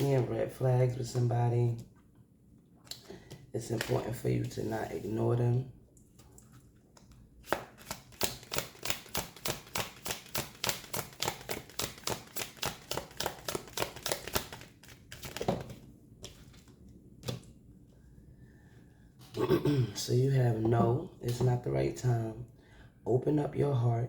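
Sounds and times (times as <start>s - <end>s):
cards being shuffled: 3.7s - 4.7s, 7.0s - 17.5s.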